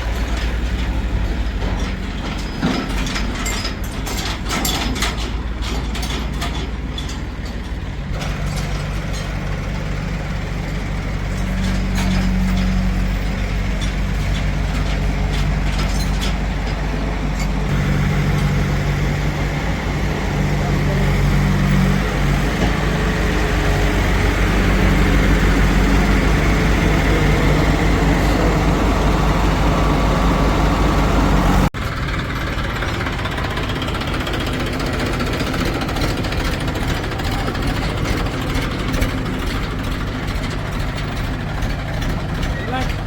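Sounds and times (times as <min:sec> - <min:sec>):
heavy diesel engine running: 0:00.0 - 0:43.0
lighter engine running: 0:16.7 - 0:40.3.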